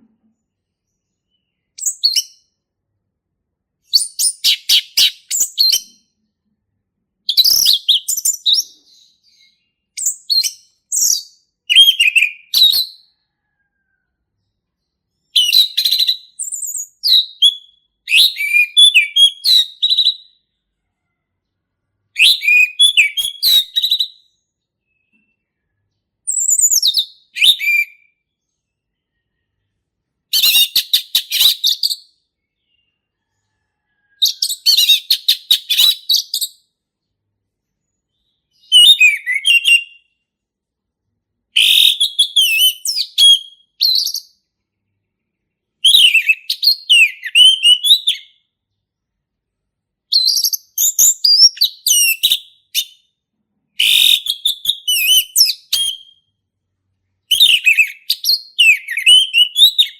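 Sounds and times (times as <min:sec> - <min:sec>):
thrush singing whistled phrases: 0:03.8 - 0:06.0, 0:07.3 - 0:13.0, 0:15.4 - 0:20.4, 0:22.2 - 0:24.3, 0:26.3 - 0:28.2, 0:30.3 - 0:32.1, 0:34.3 - 0:36.6, 0:38.6 - 0:40.1, 0:41.6 - 0:44.3, 0:45.8 - 0:48.4, 0:50.1 - 0:53.1, 0:53.8 - 0:56.3, 0:57.3 - 0:59.9.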